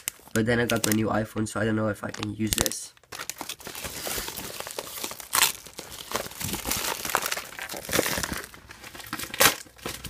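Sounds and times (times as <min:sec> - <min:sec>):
plastic bags crinkling: 0:00.0 - 0:01.3, 0:02.0 - 0:10.0.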